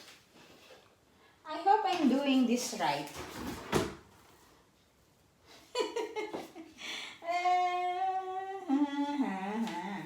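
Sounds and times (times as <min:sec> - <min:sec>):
woman singing a long note: 0:07.2 - 0:10.0.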